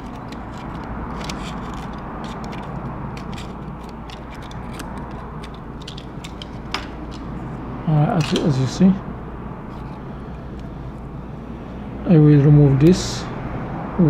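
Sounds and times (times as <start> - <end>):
tape trimming clicks and scraping: 0.0 - 7.4, 8.2 - 8.6
steady low hum: 0.0 - 14.0.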